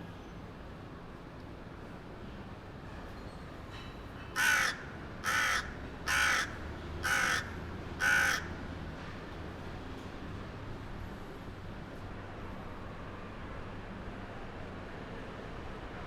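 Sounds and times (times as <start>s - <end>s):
bird calling harshly: 4.4s - 8.5s.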